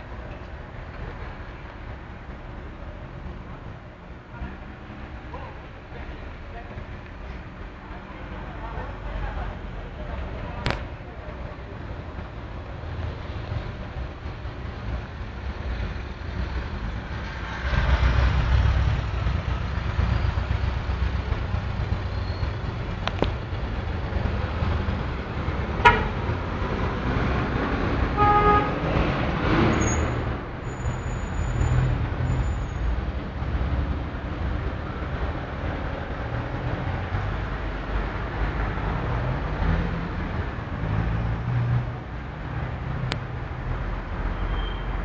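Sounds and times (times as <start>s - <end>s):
heavy traffic rumbling: 0.0s - 45.0s
car horn honking: 25.8s - 26.2s, 28.2s - 28.8s.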